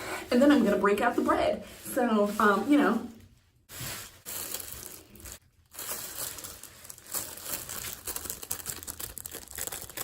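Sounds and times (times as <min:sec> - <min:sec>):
plastic bag crinkling: 0:03.7 - 0:10.0.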